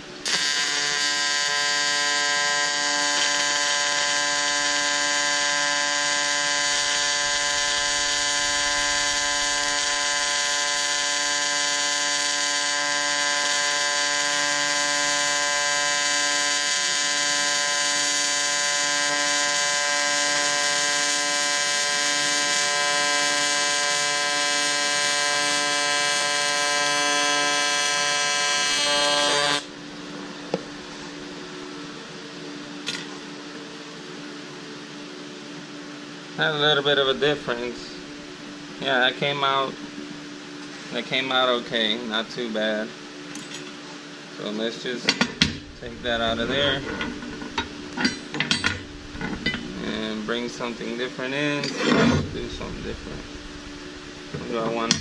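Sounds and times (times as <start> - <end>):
welding arc buzzing: 0.0 - 31.9, 45.2 - 55.0.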